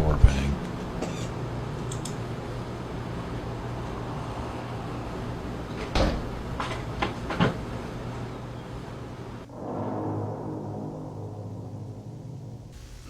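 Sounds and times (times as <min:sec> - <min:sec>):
low hum: 0:09.4 - 0:13.0.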